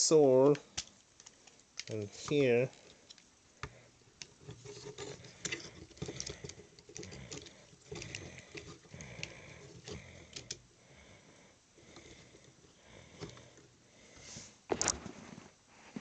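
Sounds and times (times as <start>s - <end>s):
plastic figure parts clicking: 0.4s - 10.6s.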